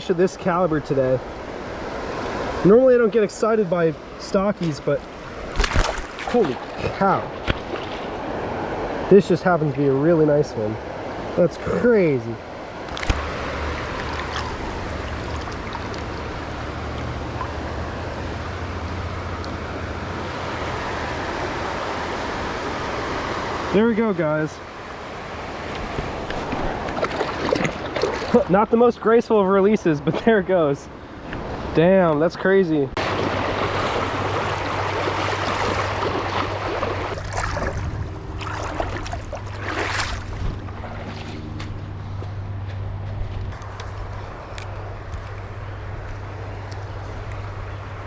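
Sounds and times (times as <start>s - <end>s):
stream water rushing: 0.0s - 43.0s
wind rumbling on microphone: 32.9s - 48.0s.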